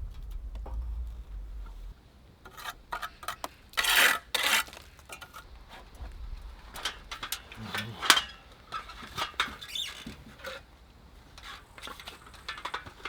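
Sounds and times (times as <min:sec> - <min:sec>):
low rumble: 0:00.0 - 0:02.1, 0:05.5 - 0:07.2
trowel scraping mortar on brick: 0:02.5 - 0:05.4.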